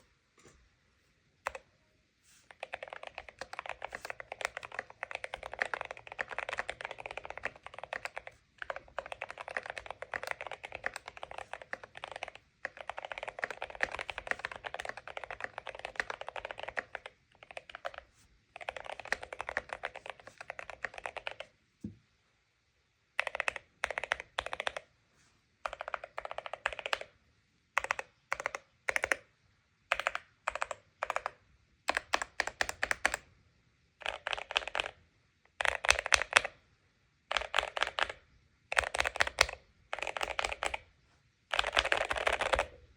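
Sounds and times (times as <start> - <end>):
mechanical keyboard typing: 1.4 - 1.7, 2.5 - 21.5, 23.2 - 24.9, 25.6 - 27.2, 27.8 - 29.3, 29.9 - 33.2, 34.0 - 35.0, 35.6 - 36.6, 37.3 - 40.9, 41.5 - 42.8.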